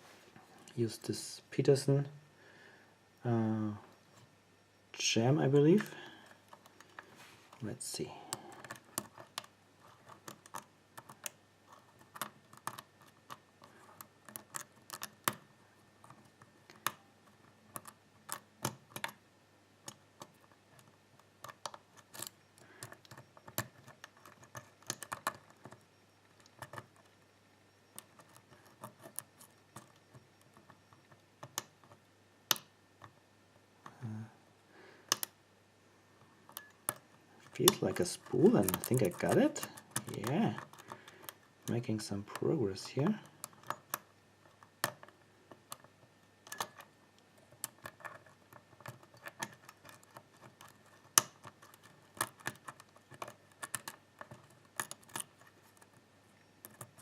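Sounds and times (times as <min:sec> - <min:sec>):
lock pick clicking in a lock: 0:08.5 - 0:19.2, 0:19.8 - 0:25.8, 0:28.0 - 0:30.8, 0:35.1 - 0:35.4, 0:36.5 - 0:42.5, 0:43.2 - 0:56.0.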